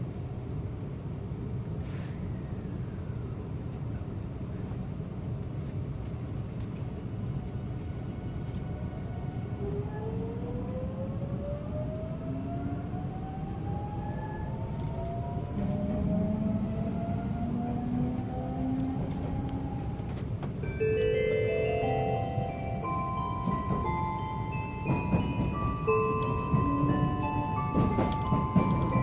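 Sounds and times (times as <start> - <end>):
train running gear rumble: 0.0 - 29.0.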